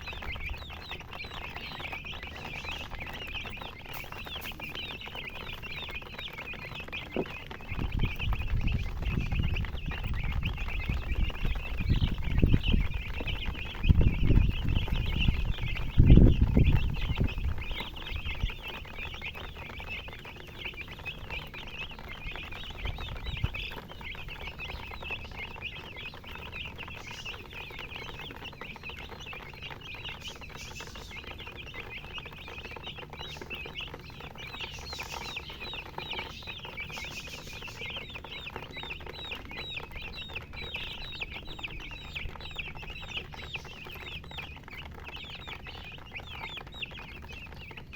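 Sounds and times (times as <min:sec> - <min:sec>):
baby chicks chirping: 0:00.0 - 0:47.9.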